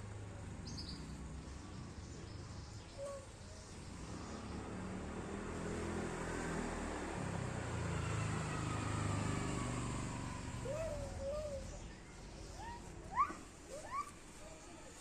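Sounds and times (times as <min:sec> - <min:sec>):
vehicle passing by: 0:03.6 - 0:12.0.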